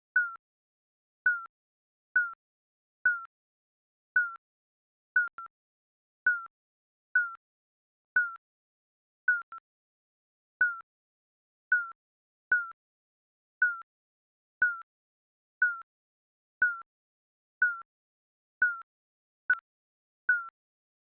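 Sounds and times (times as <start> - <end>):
timer beeping: 0.2 - 0.4, 1.3 - 1.5, 6.3 - 6.5, 9.3 - 9.6.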